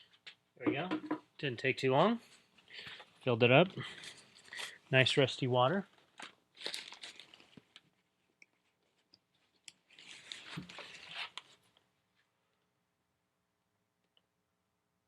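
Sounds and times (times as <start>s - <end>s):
plastic bag crinkling: 6.1s - 7.8s.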